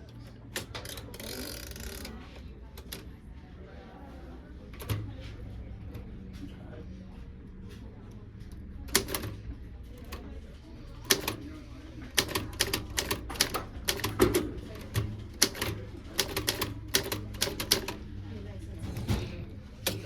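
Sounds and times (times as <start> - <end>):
typewriter keys clacking: 8.9 - 9.4, 12.2 - 18.0.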